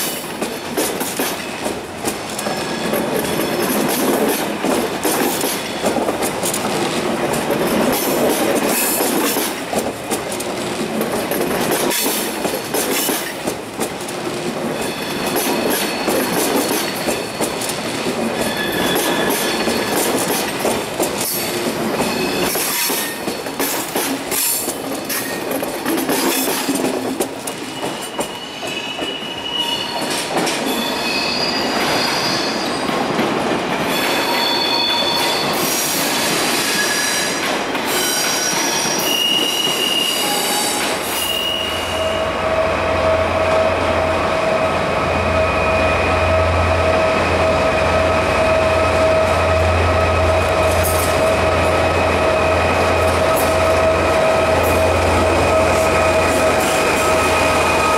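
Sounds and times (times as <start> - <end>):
train wheels clicking: 0.0 - 31.0, 31.6 - 42.1, 45.3 - 57.9
high wheel squeals: 18.4 - 20.0, 27.7 - 32.8, 33.9 - 57.9.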